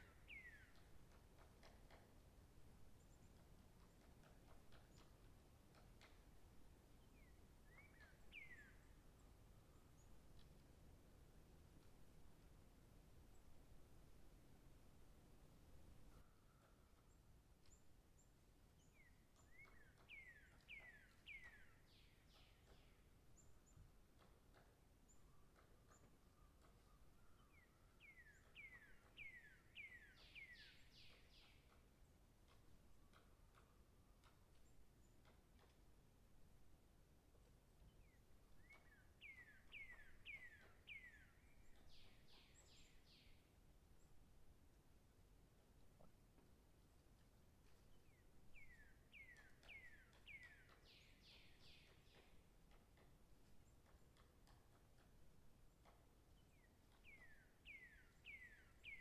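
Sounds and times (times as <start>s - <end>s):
bird whistling song: 0.0s - 0.8s, 7.2s - 9.0s, 18.8s - 23.0s, 26.4s - 31.8s, 38.0s - 43.4s, 48.1s - 52.3s, 56.5s - 59.0s.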